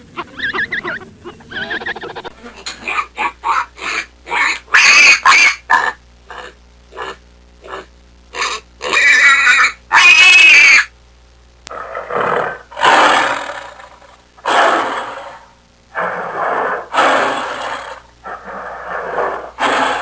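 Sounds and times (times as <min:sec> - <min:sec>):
breathy animal call: 0:00.0 - 0:02.6
animal calling: 0:00.0 - 0:10.9.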